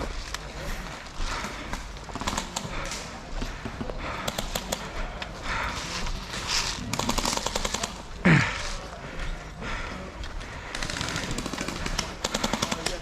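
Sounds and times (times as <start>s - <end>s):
airsoft guns firing bursts: 1.3s - 5.1s, 6.8s - 8.2s, 10.6s - 13.0s.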